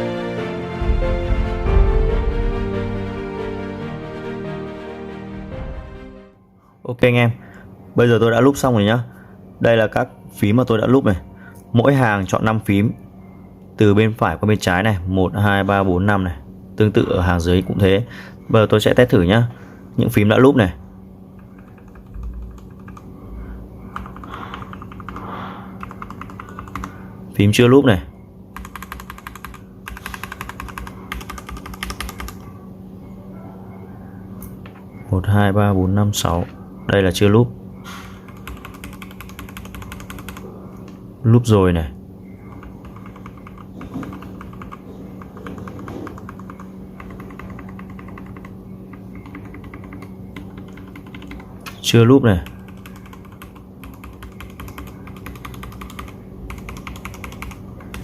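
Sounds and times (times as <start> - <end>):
mechanical keyboard typing: 21.4 - 23.1, 23.9 - 27.0, 28.6 - 32.4, 38.2 - 40.5, 42.5 - 51.5, 52.4 - 58.0.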